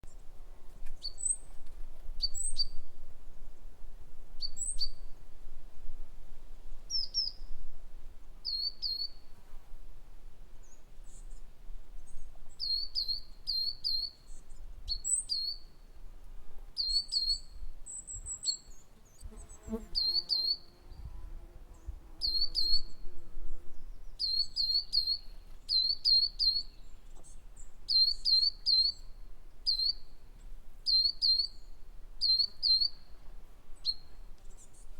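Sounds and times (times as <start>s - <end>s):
lower pitched bird call: 16.8s - 20.8s, 21.8s - 23.0s
songbird chirping: 16.8s - 21.1s, 21.8s - 33.2s.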